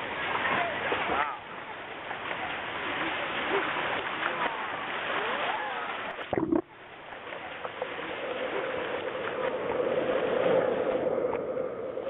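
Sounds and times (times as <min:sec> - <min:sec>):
steady hum: 0:06.3 - 0:06.9.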